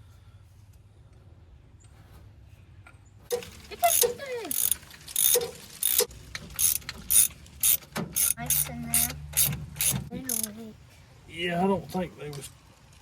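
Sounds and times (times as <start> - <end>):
ratchet wrench clicking: 3.9 - 10.6.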